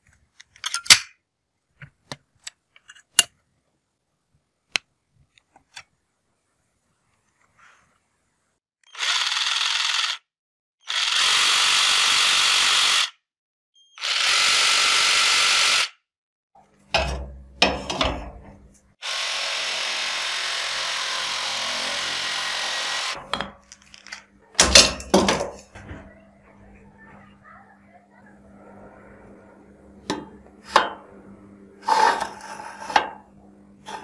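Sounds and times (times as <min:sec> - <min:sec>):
jigsaw cutting wood: 0:08.9 - 0:13.2, 0:14.0 - 0:16.0, 0:19.0 - 0:23.2.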